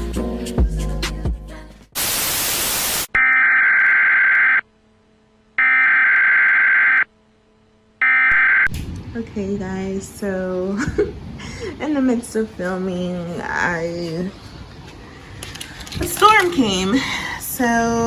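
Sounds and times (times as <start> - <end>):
background music: 0.0 - 1.9
burst of static: 2.0 - 4.6.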